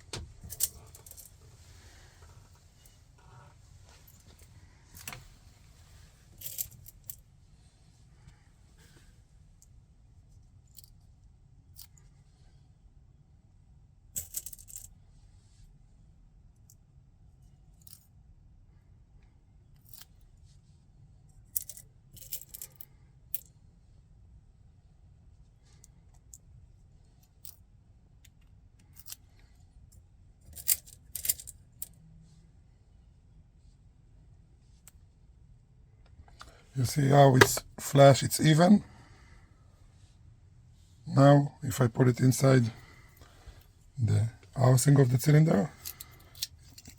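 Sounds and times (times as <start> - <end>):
metal lock parts clicking: 0.1 - 1.4, 14.2 - 14.9, 21.5 - 23.5, 28.3 - 29.3, 30.5 - 32.0, 36.3 - 37.9, 45.7 - 46.9.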